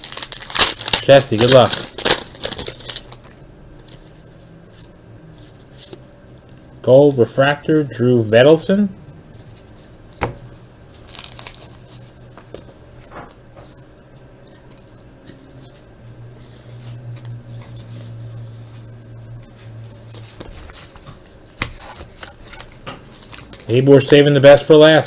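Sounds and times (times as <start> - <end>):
cards and wrappers rustling: 0.0 - 6.0, 10.9 - 12.8, 19.8 - 25.0
low steady hum: 0.0 - 25.0.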